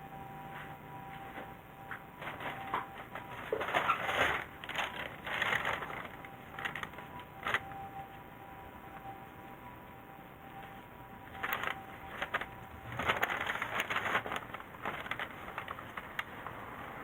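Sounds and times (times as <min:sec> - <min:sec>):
objects rustling and clattering: 0:01.1 - 0:07.8, 0:10.7 - 0:17.0.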